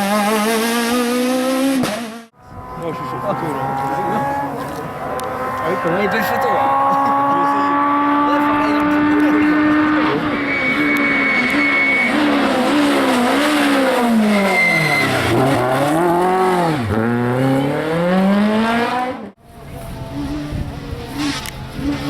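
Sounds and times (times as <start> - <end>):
rally car engine at full throttle: 0.0 - 22.0
tyre squeal: 10.0 - 15.9.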